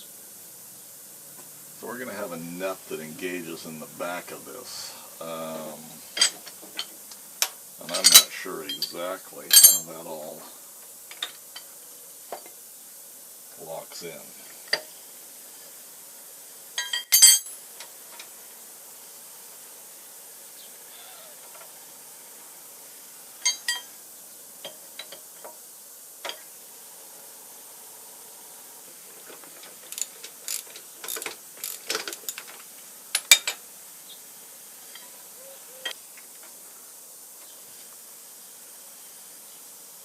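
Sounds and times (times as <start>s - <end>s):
metal parts clinking and knocking: 6.2s - 6.9s, 7.9s - 9.9s, 16.8s - 17.6s, 29.3s - 33.6s.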